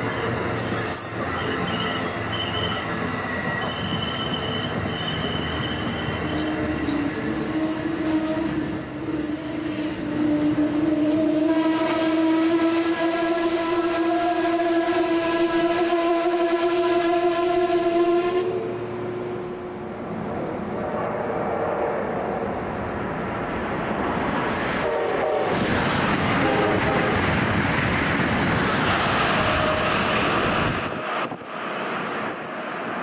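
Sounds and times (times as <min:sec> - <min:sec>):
train wheels squealing: 0:00.0 - 0:19.1, 0:28.7 - 0:33.0
train wheels rumbling: 0:00.0 - 0:33.0.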